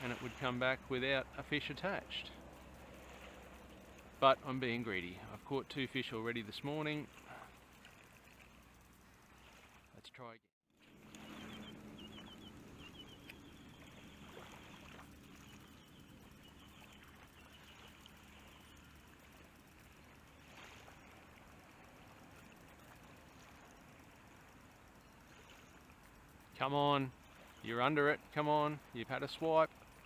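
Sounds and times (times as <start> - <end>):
shallow water trickling and lapping: 0.0 - 30.0
light high ticks: 0.2 - 9.9, 10.9 - 30.0.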